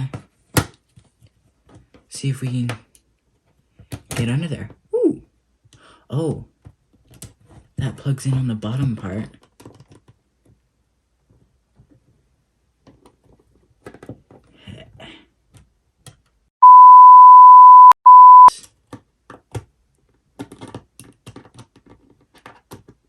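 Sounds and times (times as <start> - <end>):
censor bleep: 16.6 - 18.5.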